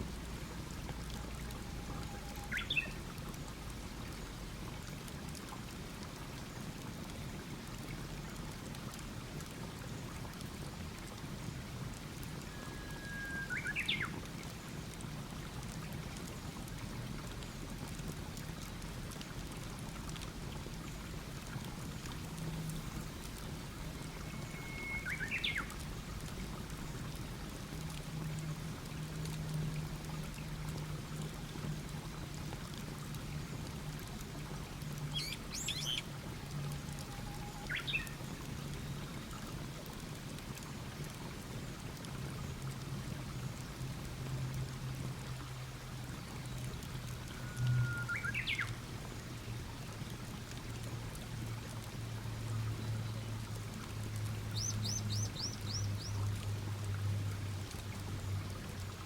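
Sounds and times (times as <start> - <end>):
birdsong: 1.9 - 3.0, 13.4 - 14.2, 23.9 - 25.8, 35.1 - 36.0, 37.4 - 38.2, 47.4 - 48.7, 54.6 - 56.2
songbird whistling: 2.0 - 3.0, 12.6 - 14.1, 24.1 - 25.7, 35.2 - 36.0, 47.4 - 48.7
short high bird calls: 24.4 - 25.7, 35.2 - 36.0.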